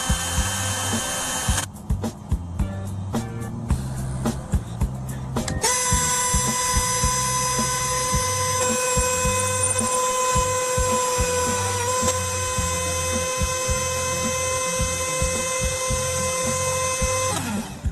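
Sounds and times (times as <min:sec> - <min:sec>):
high-pitched machine whine: 0:00.0 - 0:01.8, 0:05.6 - 0:17.9
music with bass beat: 0:00.0 - 0:17.9.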